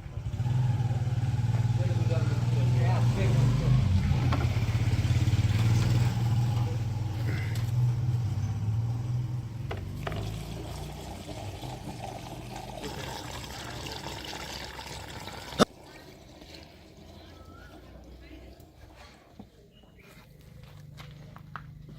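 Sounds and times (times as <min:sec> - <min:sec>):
diesel engine running: 0:00.0 - 0:13.8.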